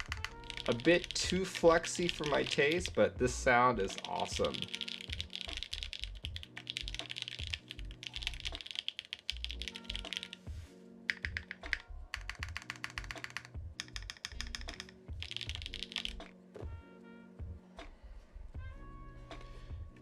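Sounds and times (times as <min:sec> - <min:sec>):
mechanical keyboard typing: 0:00.0 - 0:03.0, 0:03.9 - 0:10.4, 0:11.1 - 0:16.2
background music: 0:00.0 - 0:20.0.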